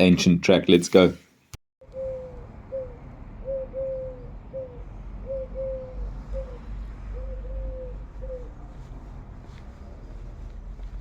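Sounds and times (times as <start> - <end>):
dove cooing: 1.8 - 8.7.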